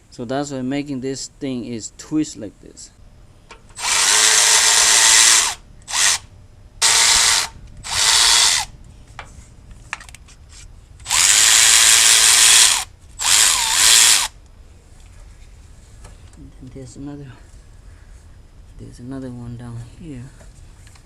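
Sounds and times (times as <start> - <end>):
power tool motor bursts: 3.8 - 8.7, 11.0 - 14.3.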